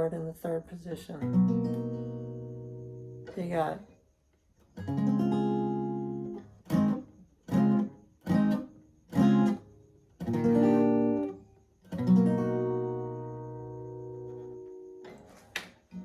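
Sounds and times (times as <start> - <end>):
guitar strumming chords: 4.8 - 15.2.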